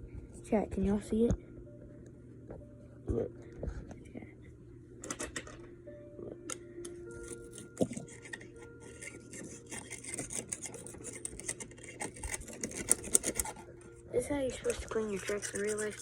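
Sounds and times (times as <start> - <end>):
dirt scrubbed off plastic toy: 14.6 - 16.0.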